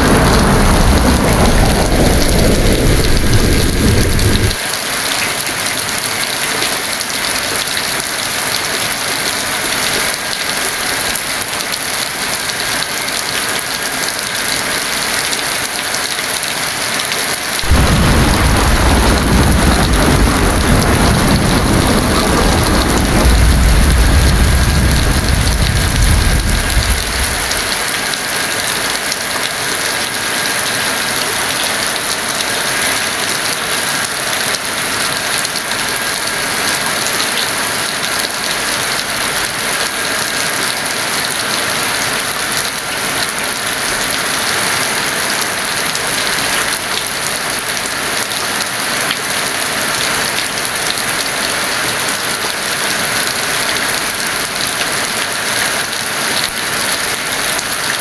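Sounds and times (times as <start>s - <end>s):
thunder rumbling: 0.0s - 4.6s, 17.6s - 28.2s
heavy rain: 0.0s - 58.0s.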